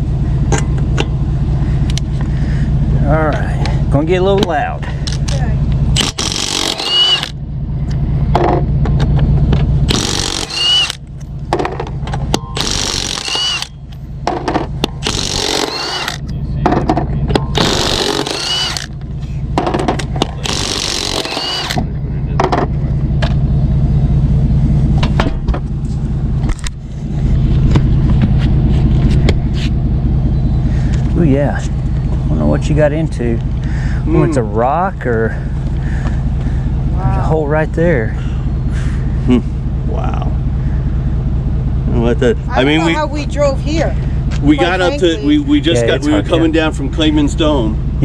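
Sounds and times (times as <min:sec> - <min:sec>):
low engine rumble: 0:00.0 - 0:48.0
impact wrench bursts: 0:06.0 - 0:07.4, 0:09.8 - 0:11.1, 0:12.3 - 0:13.9, 0:14.5 - 0:16.3, 0:17.4 - 0:19.0, 0:19.8 - 0:21.8.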